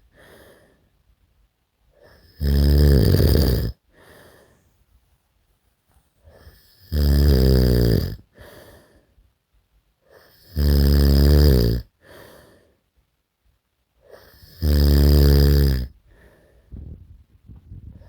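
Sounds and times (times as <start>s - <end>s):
soft breathing: 0.0s - 1.1s, 3.8s - 6.7s, 8.3s - 9.3s, 12.0s - 13.0s, 16.0s - 17.1s, 17.8s - 18.0s
loud rattling snores: 2.2s - 3.8s, 6.4s - 8.3s, 10.3s - 11.9s, 14.2s - 15.9s.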